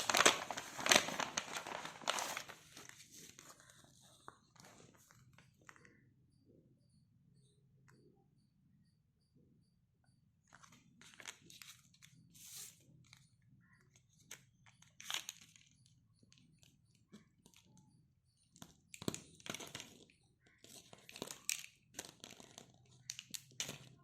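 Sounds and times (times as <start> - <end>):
packaging crinkling and tearing: 0.0 - 3.8
packaging clicks: 20.8 - 23.9.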